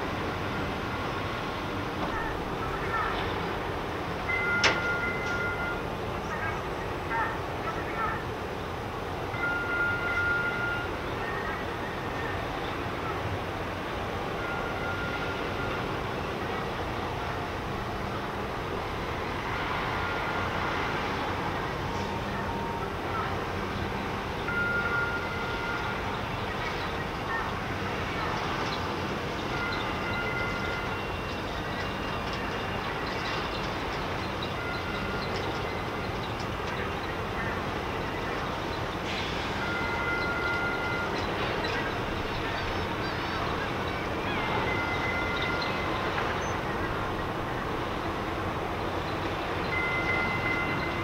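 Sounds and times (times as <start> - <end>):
industrial machinery noise: 12.4 - 51.0
mechanical rumble and hiss: 31.3 - 44.5.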